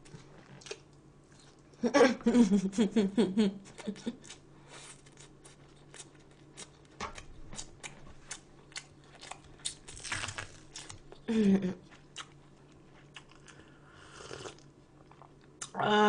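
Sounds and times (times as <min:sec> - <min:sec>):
crunchy food chewing: 0:04.2 - 0:15.7.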